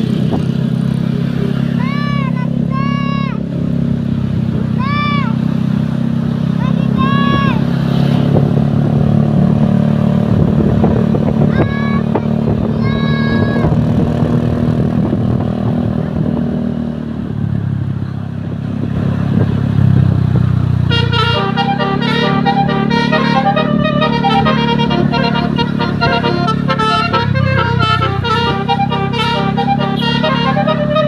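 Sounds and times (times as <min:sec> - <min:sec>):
bus engine running: 0:00.0 - 0:31.0
multi-tone horn melody: 0:20.8 - 0:31.0
short horn toots: 0:20.9 - 0:31.0.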